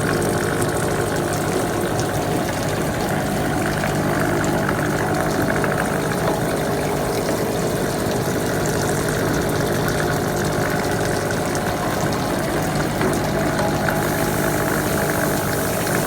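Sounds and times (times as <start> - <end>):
machine tool humming: 13.3 - 16.0.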